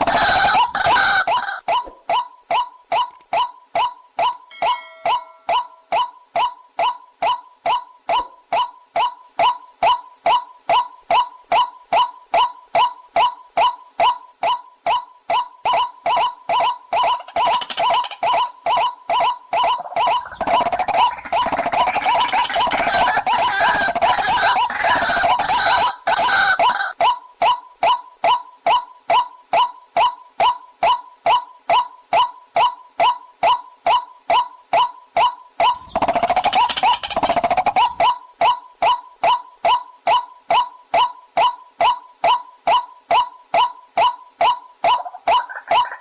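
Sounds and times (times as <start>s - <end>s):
rapid chattering trill: 0.0s - 46.0s
waterhen calling: 19.7s - 27.0s, 44.9s - 46.0s.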